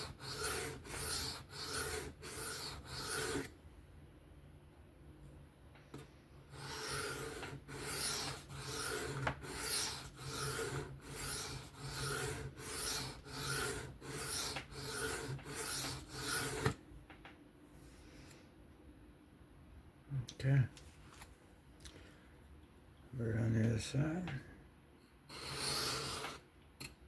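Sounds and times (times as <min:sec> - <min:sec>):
knife scraping on sharpening stone: 0:00.0 - 0:03.5, 0:06.6 - 0:16.8.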